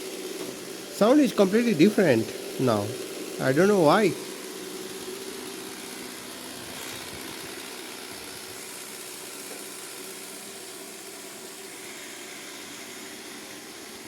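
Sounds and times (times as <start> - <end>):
robot vacuum motor and fan hum: 0.0 - 14.0.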